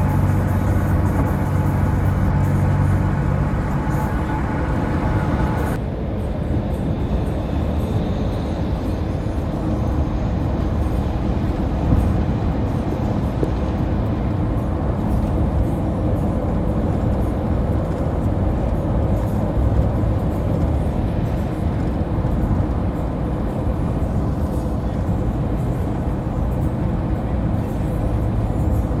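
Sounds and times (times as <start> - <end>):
car driving at highway speed: 0.0 - 29.0.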